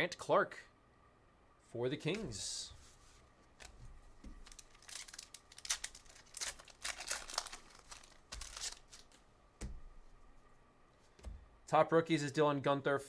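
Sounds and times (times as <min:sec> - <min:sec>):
foil wrapper tearing and crinkling: 0:04.3 - 0:09.2.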